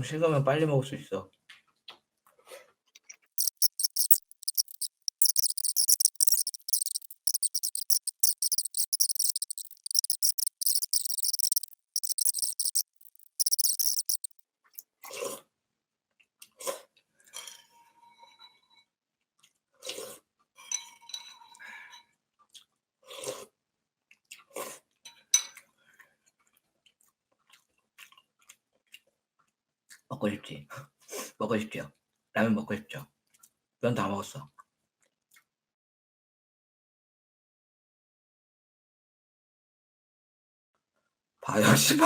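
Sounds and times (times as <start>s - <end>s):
chewing: 3.4s - 14.3s.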